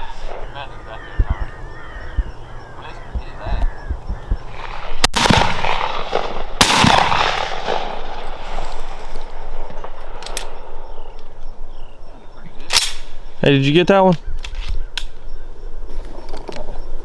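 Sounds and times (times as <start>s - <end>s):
loud shotgun blasts: 0.0s - 10.9s
faint gunshot crack: 4.6s - 8.3s.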